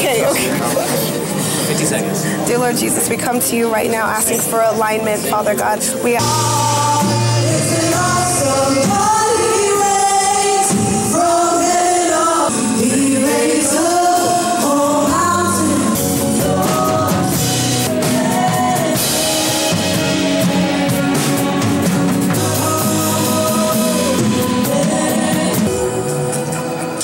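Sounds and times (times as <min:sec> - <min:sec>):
choir song with drums: 0:06.2 - 0:27.0.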